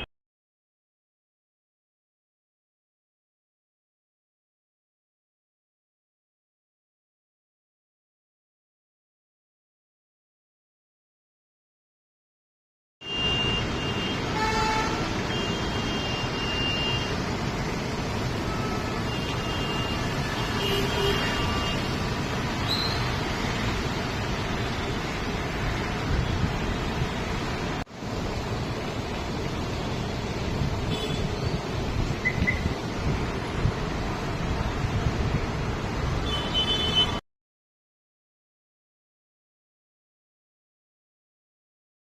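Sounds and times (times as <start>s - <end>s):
vehicle horns honking: 13.0s - 17.2s, 18.4s - 22.0s, 30.8s - 31.5s, 36.2s - 37.2s
street traffic noise: 13.0s - 37.2s.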